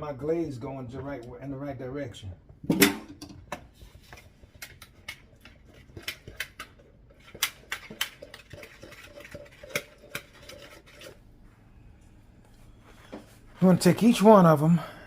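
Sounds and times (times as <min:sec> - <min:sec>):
utensil clinking against a bowl: 0:04.6 - 0:11.2.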